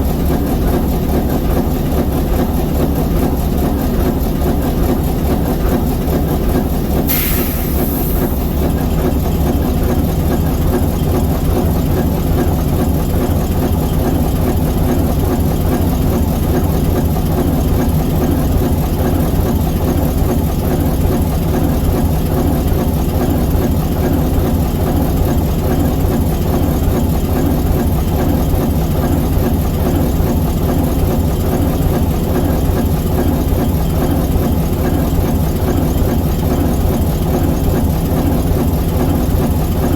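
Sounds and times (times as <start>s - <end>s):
locomotive diesel engine running: 0.0s - 39.9s
short hiss: 7.0s - 8.7s.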